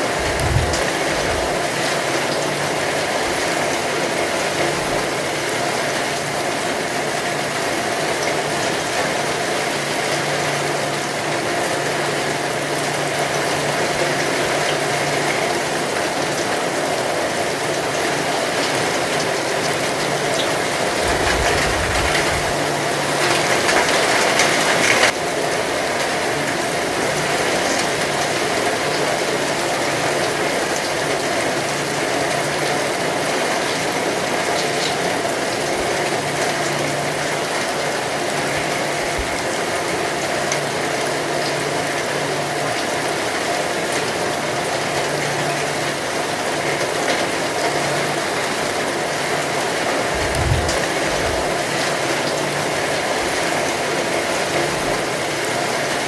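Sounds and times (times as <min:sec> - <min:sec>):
heavy rain: 0:00.0 - 0:56.0
deep rumble: 0:00.2 - 0:01.6, 0:21.0 - 0:22.7, 0:50.1 - 0:51.5.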